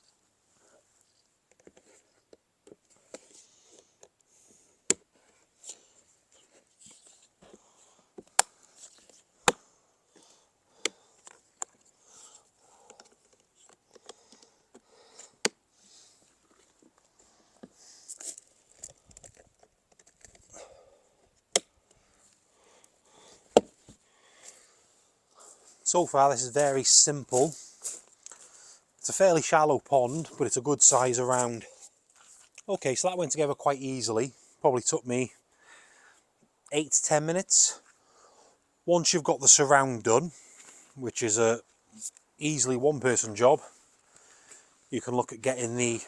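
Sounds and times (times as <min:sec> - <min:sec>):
plastic handling and rustling: 0:16.2 - 0:20.6.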